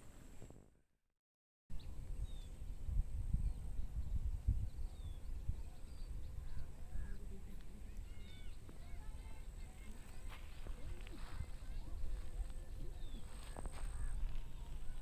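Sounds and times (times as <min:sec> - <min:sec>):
small birds chirping: 0:01.7 - 0:15.0
wind buffeting microphone: 0:01.8 - 0:15.0.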